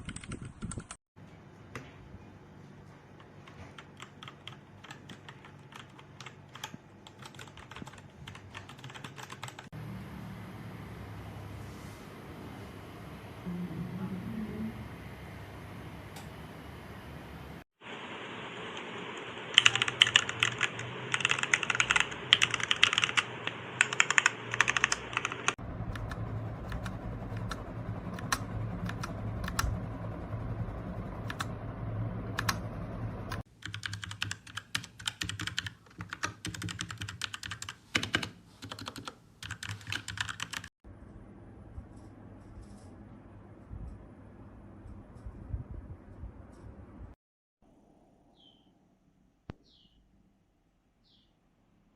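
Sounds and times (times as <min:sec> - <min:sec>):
mechanical keyboard typing: 0:00.0 - 0:01.0, 0:03.2 - 0:09.7, 0:19.2 - 0:29.7, 0:31.2 - 0:31.5, 0:32.4 - 0:32.6, 0:33.3 - 0:40.7.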